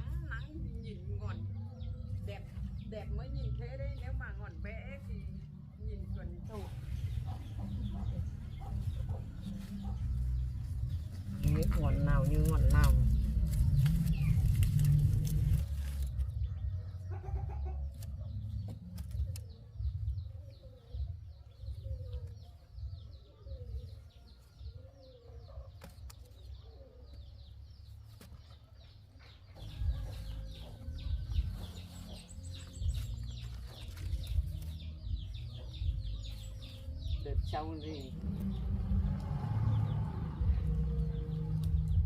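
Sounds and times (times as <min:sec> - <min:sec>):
low rumble: 0:00.0 - 0:16.7, 0:29.6 - 0:42.0
small birds chirping: 0:00.0 - 0:42.0
chickens clucking: 0:06.6 - 0:15.6, 0:16.4 - 0:22.7, 0:28.1 - 0:40.0.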